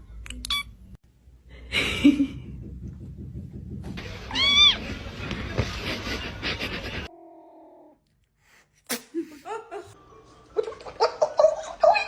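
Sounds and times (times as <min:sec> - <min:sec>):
cat meowing: 0:04.3 - 0:04.8.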